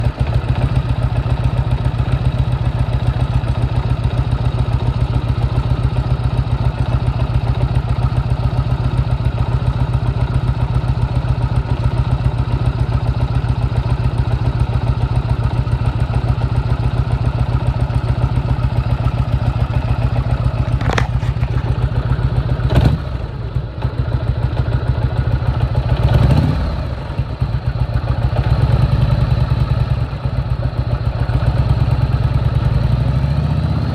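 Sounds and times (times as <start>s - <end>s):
motorcycle engine idling: 0.0s - 33.9s
motorcycle engine revving: 0.1s - 33.9s.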